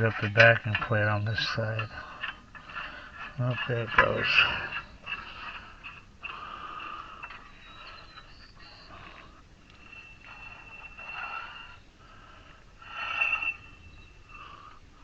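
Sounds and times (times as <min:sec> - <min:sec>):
brake rotor scraping metal plate: 0:00.0 - 0:11.9, 0:12.8 - 0:14.7.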